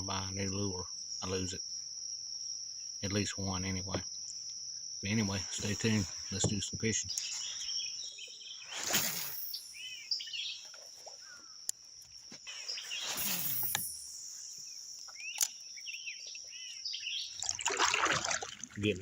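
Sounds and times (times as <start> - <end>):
crickets and cicadas droning: 0.0 - 19.0
bird chirps: 5.2 - 17.6.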